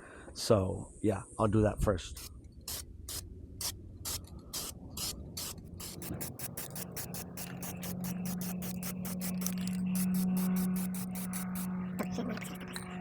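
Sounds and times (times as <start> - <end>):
steady low hum: 2.0 - 13.0
spray can rattling: 2.7 - 3.2, 4.1 - 13.0.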